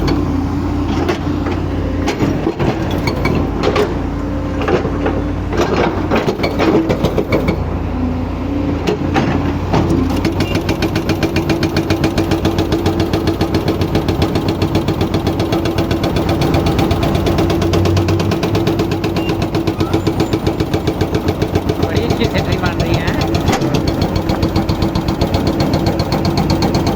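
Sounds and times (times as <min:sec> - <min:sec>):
excavator engine running: 0:00.0 - 0:26.9
hydraulic breaker hammering: 0:04.6 - 0:07.7, 0:08.8 - 0:26.9.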